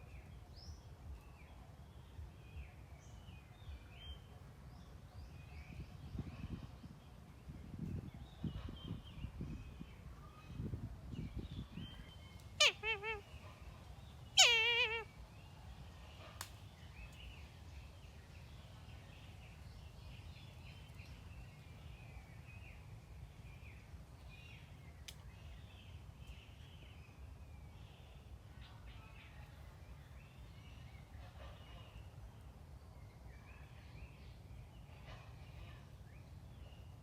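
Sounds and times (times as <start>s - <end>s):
kite screaming: 14.4s - 15.1s.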